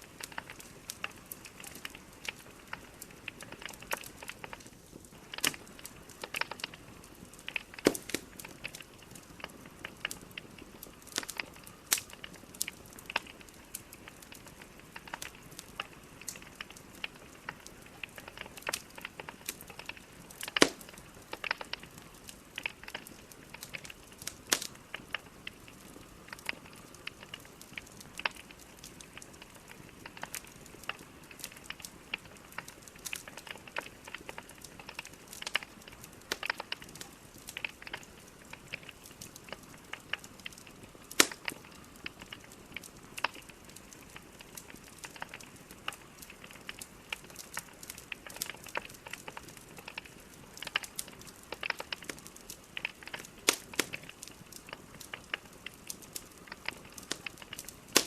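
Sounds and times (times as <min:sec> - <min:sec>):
logs burning with crackles and pops: 0:00.0 - 0:58.0.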